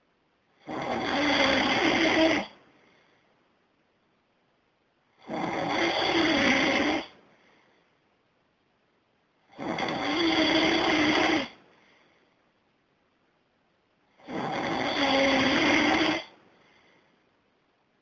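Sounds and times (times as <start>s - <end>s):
man snoring loudly: 0.6s - 2.5s, 5.2s - 7.1s, 9.5s - 11.6s, 14.2s - 16.3s.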